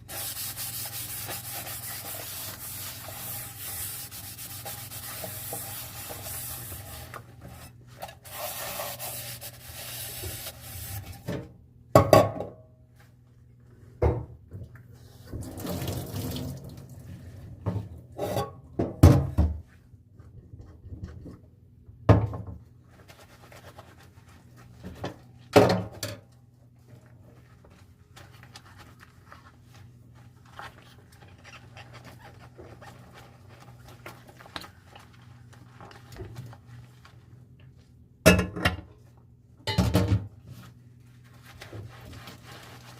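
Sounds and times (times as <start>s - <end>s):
dishes being scrubbed: 0.0s - 11.3s.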